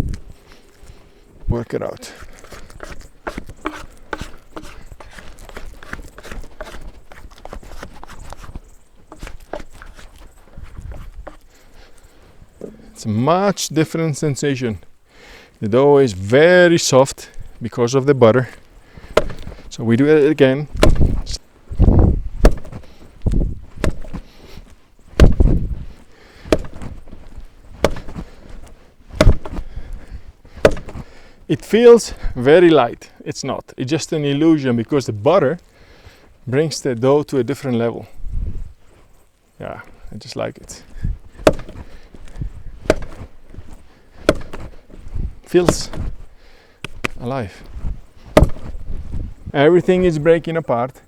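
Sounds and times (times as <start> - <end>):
dough slapping and squelching: 1.8 - 11.5, 19.0 - 31.2, 41.3 - 49.3
dough slapped onto a board: 20.8 - 21.2, 22.4 - 22.8, 26.5 - 26.9, 27.8 - 28.2, 29.2 - 29.6, 30.6 - 31.0, 41.5 - 41.9, 44.3 - 44.7, 48.4 - 48.7.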